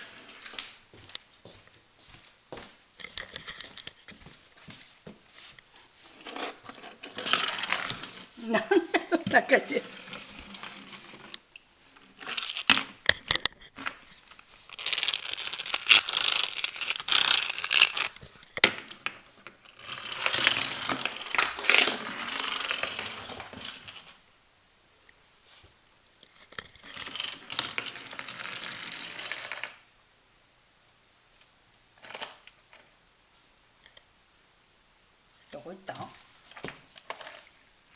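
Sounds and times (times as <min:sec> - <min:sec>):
paper or plastic crinkling: 0:14.6 - 0:18.4.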